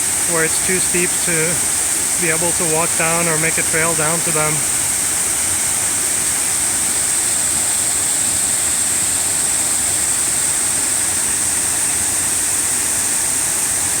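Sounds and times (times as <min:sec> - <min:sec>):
waterfall rushing: 0:00.0 - 0:07.2.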